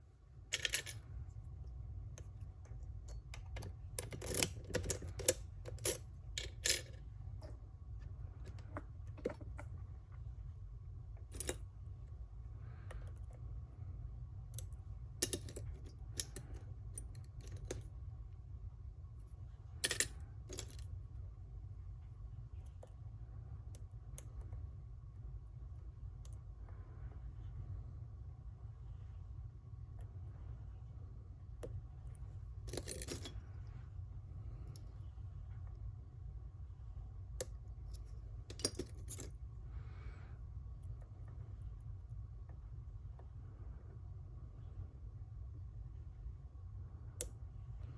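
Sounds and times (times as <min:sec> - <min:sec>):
low hum: 0:00.0 - 0:47.9
metallic clicks of lock-picking tools: 0:00.6 - 0:01.0, 0:02.2 - 0:07.0, 0:14.5 - 0:17.9, 0:32.7 - 0:33.5, 0:37.4 - 0:39.3.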